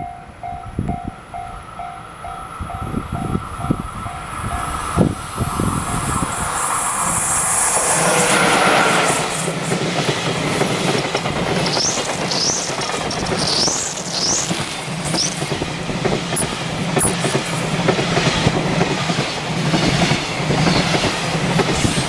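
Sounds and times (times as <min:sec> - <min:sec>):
level-crossing warning bell: 0:00.0 - 0:07.3, 0:09.4 - 0:17.8
high rising squeals: 0:00.0 - 0:18.4
train passing: 0:00.0 - 0:22.0
wheels clacking over rail joints: 0:02.8 - 0:22.0.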